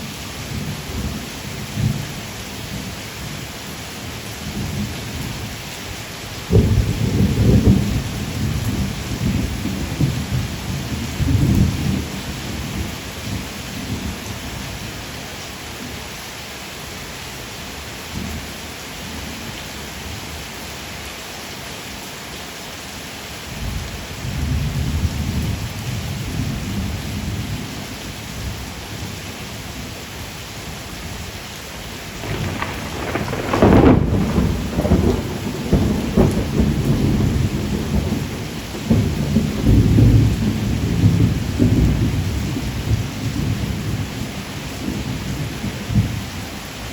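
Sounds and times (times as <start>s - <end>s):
steady rain: 0.0s - 46.9s
rolling thunder: 6.5s - 14.0s, 32.2s - 44.2s.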